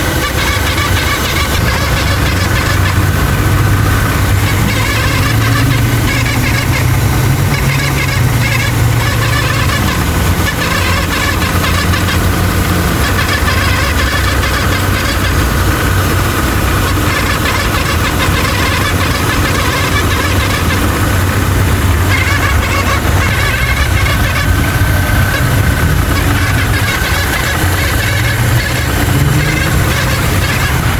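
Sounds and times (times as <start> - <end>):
car engine idling: 0.0 - 30.9
high pulley whine: 0.0 - 30.9.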